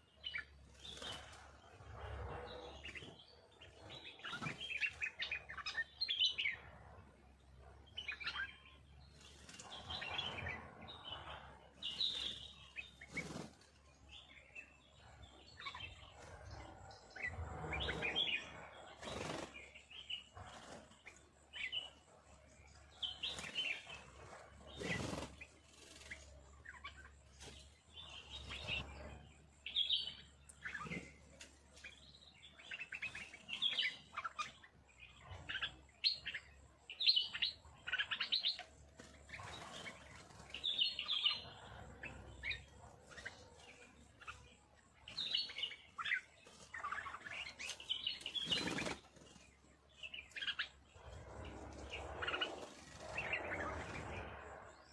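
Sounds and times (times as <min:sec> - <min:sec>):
small birds chirping: 0:00.0 - 0:54.9
wing flutters: 0:09.2 - 0:14.0, 0:15.6 - 0:21.7, 0:22.7 - 0:29.3, 0:37.4 - 0:44.4, 0:45.1 - 0:54.9.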